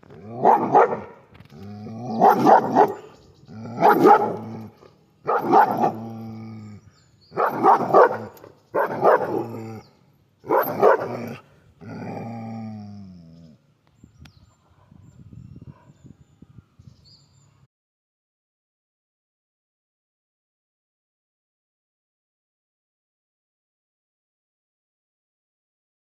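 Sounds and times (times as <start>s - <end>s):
dog howling calls: 0.3s - 6.8s.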